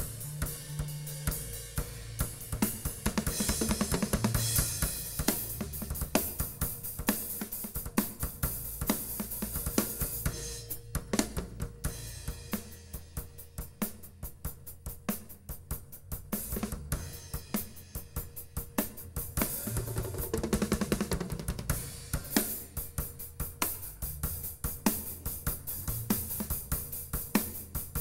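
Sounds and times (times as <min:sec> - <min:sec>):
low bass notes: 0:25.6 - 0:26.8.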